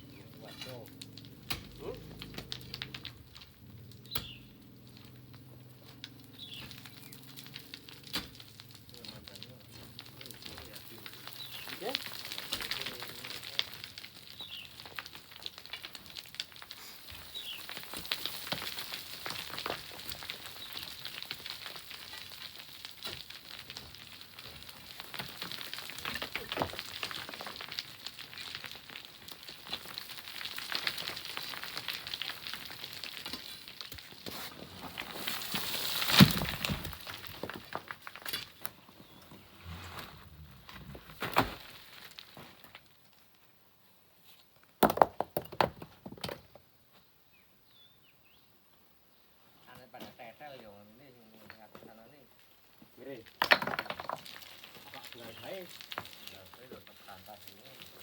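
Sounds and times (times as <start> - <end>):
sand and pebbles trickling: 0.0 - 43.4, 49.7 - 58.0.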